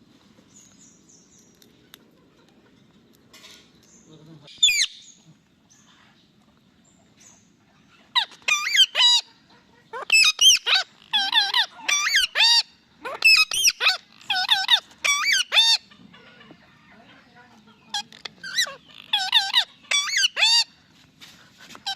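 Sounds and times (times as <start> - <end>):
parakeet screeching calls: 4.5 - 5.0, 8.1 - 9.3, 9.9 - 15.9, 17.9 - 20.8.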